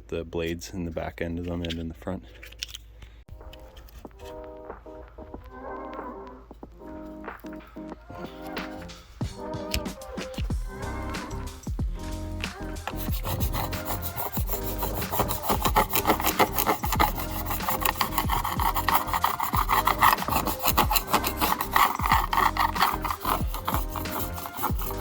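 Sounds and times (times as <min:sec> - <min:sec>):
hand scraper scraping sealant: 0:12.5 - 0:25.0.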